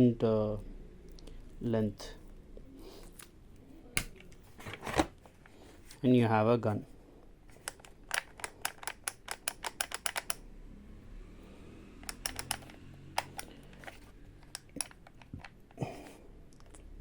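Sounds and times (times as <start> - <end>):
plastic parts clicking: 7.5 - 10.4, 12.0 - 15.8.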